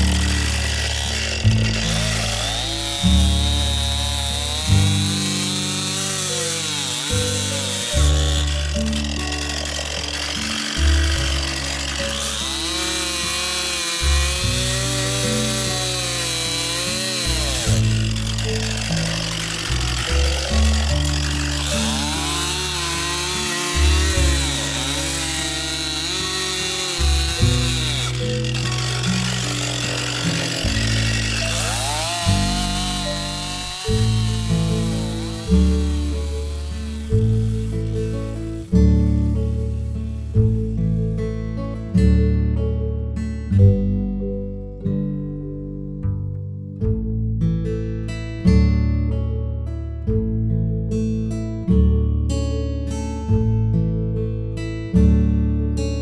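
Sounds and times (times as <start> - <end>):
chainsaw cutting log: 0.0 - 41.8
background music: 0.0 - 43.0.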